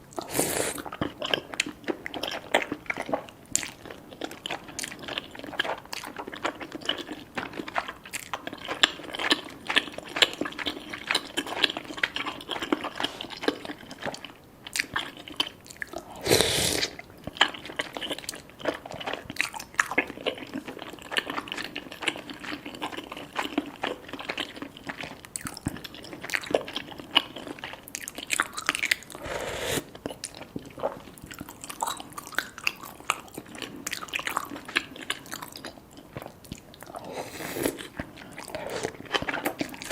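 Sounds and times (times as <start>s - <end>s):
wet chewing with smacks: 0.1s - 16.2s, 16.9s - 29.2s, 29.9s - 39.9s
loud slurps: 0.2s - 0.8s, 16.2s - 17.0s, 29.1s - 30.0s, 37.0s - 37.9s, 38.5s - 39.2s.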